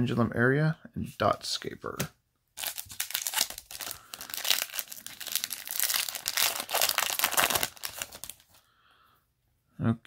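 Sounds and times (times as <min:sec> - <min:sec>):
foil wrapper crinkling: 0:02.6 - 0:08.6.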